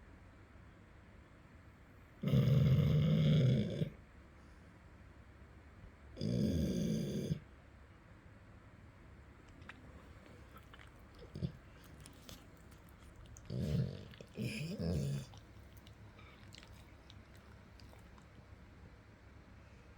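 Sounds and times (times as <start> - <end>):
dog snoring: 2.2 - 4.0, 6.2 - 7.4, 10.2 - 18.2
faint dog breathing: 9.6 - 19.9.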